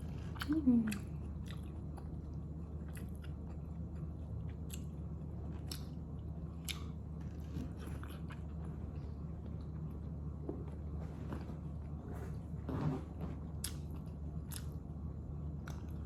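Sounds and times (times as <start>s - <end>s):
person chewing: 0.2s - 6.0s, 6.6s - 8.9s, 13.6s - 14.8s.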